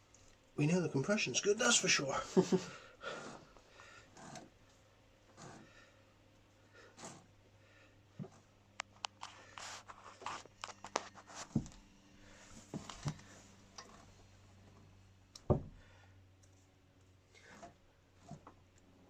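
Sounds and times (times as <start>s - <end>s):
metallic clicks and scrapes: 4.1s - 4.5s.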